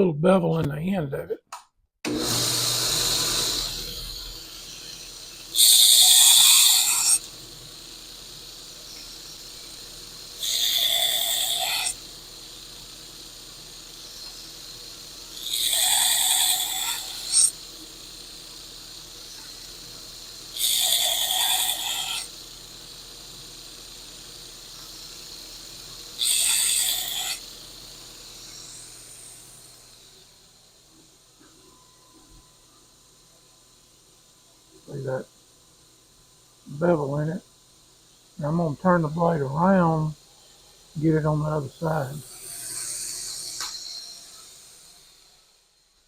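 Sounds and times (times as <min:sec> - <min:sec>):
power grinder running: 0:02.1 - 0:17.9, 0:42.0 - 0:45.6
steel blade grinding hiss: 0:02.2 - 0:30.8, 0:38.0 - 0:46.0.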